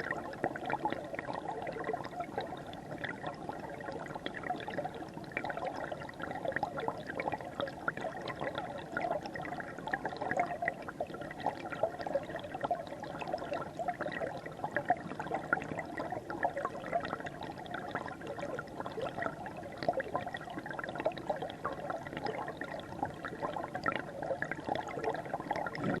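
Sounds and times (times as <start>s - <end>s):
water splashing and gurgling: 0.0s - 26.0s.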